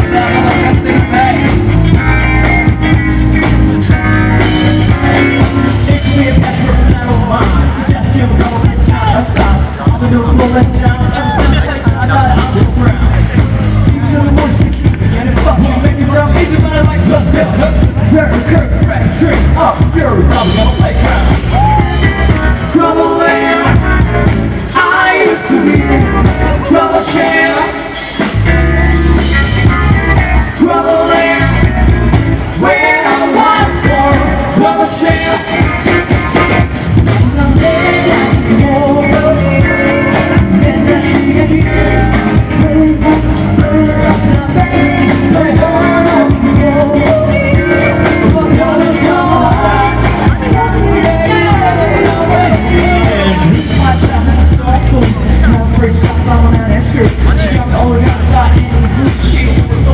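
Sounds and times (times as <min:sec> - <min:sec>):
steady low beat: 0:00.0 - 0:32.8
music with sung vocal: 0:00.0 - 0:59.9.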